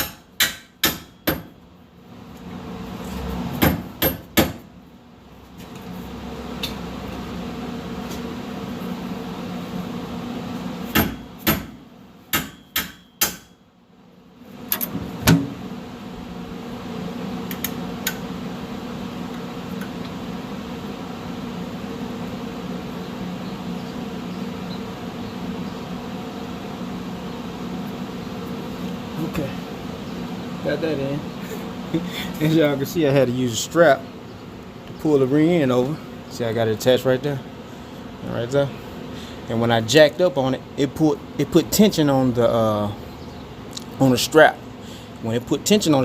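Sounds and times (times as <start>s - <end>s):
low machine hum: 0.0s - 46.0s
hammer blows on metal: 10.9s - 13.6s.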